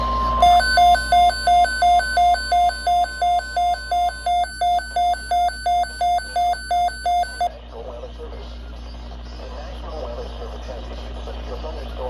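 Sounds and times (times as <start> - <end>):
electronic alarm beeps: 0.0 - 7.5.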